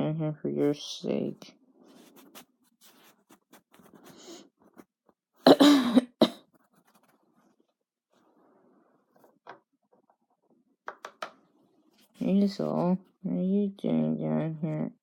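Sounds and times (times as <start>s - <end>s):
person coughing: 5.5s - 6.5s.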